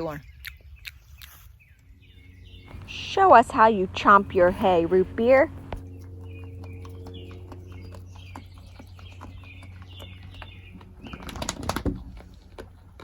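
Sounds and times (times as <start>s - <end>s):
soft bird chirps: 0.0s - 4.2s, 5.8s - 11.5s
goat chewing dry hay: 4.0s - 13.0s.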